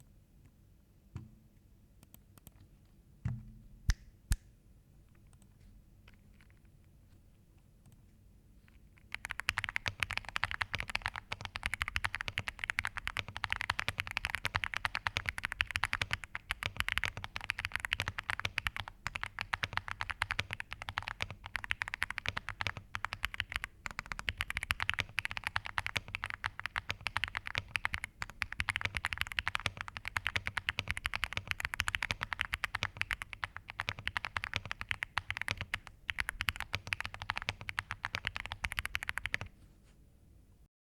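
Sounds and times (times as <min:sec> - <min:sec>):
mechanical keyboard typing: 0:08.9 - 0:39.5.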